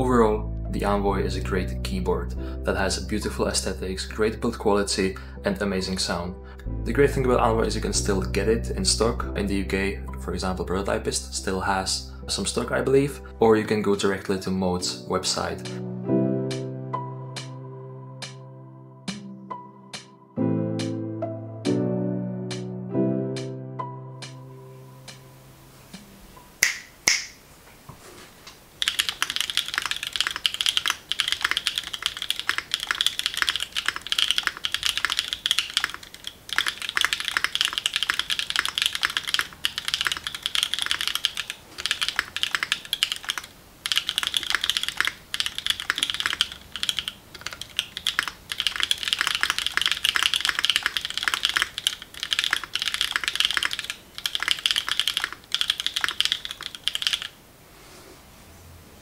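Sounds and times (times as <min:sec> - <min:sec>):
mechanical keyboard typing: 0:28.8 - 0:57.4.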